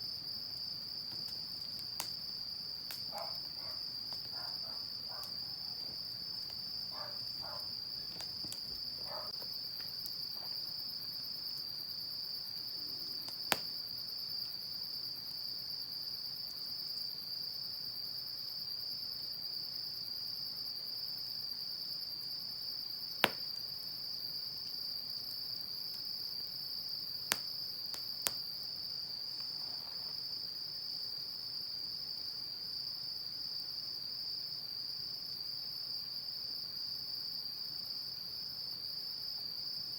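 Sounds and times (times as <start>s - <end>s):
crickets trilling: 0.0s - 39.9s
firewood popping: 0.5s - 10.7s, 13.0s - 13.8s, 23.2s - 23.5s.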